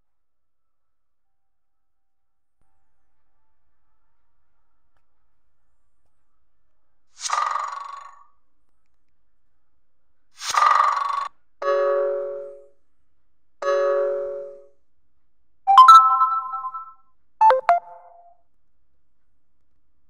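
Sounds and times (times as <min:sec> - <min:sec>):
phone ringtone chimes: 0:15.7 - 0:18.3.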